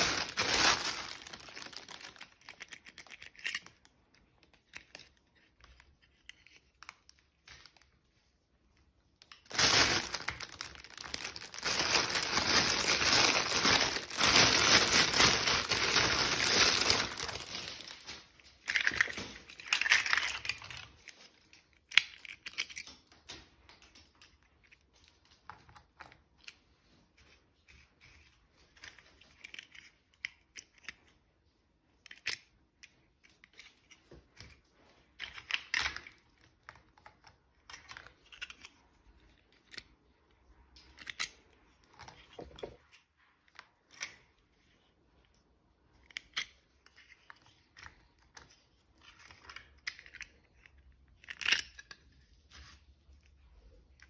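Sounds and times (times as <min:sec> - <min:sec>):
packaging crinkling and tearing: 0:00.0 - 0:08.0, 0:09.2 - 0:23.2.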